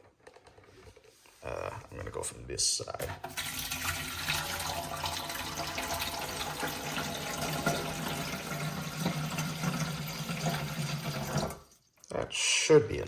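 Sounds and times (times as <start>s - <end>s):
water pouring into a tank: 3.1s - 11.9s.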